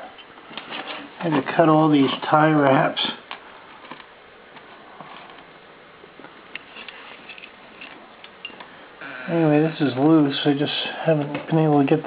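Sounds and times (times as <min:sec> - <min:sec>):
hands rustling cables: 0:00.1 - 0:02.4, 0:03.0 - 0:05.6, 0:06.2 - 0:08.7.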